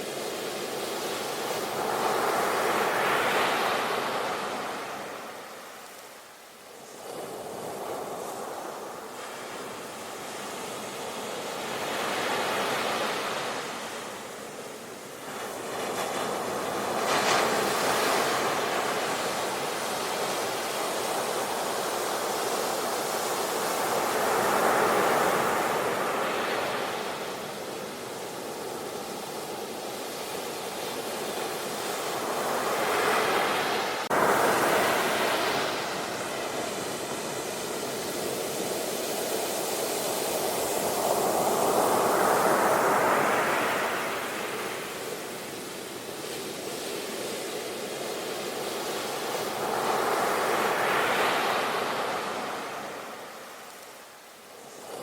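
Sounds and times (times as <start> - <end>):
sea waves breaking: 31.5 - 45.6.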